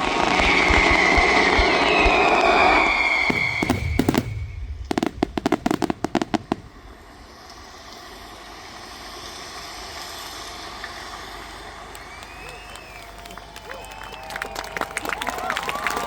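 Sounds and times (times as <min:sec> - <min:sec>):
rapid sharp firework cracks: 0:00.0 - 0:08.2
fireworks bursting: 0:00.0 - 0:11.9.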